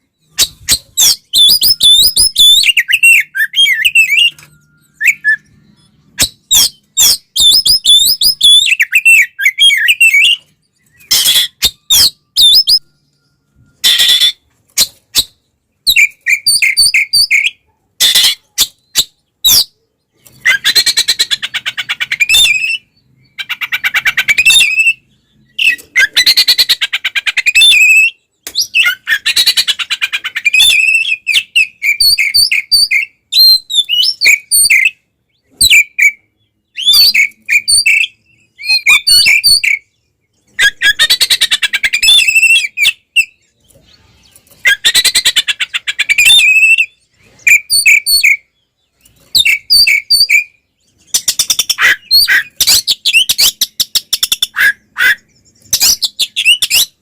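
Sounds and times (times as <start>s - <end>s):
bird whistled notes: 0.2s - 14.4s.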